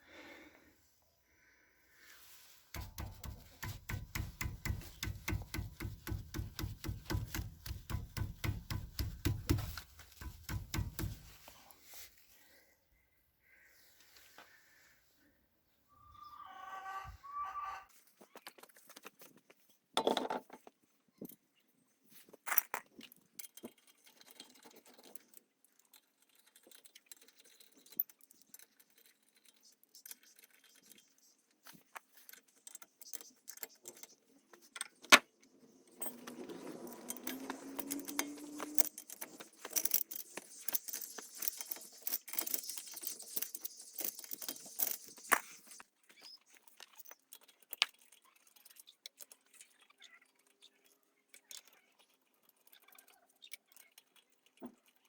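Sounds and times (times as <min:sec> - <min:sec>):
metal tools clinking and knocking: 0:02.8 - 0:11.4
rapid metallic rattling and scraping: 0:02.8 - 0:11.5, 0:36.0 - 0:45.8.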